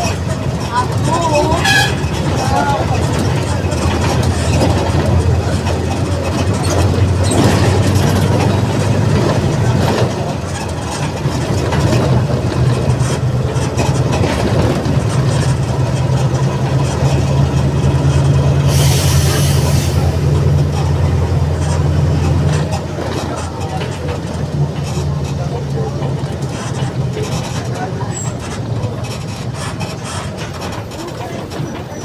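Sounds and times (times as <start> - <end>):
bus diesel engine running: 0.0 - 32.0
air hiss: 18.6 - 20.7.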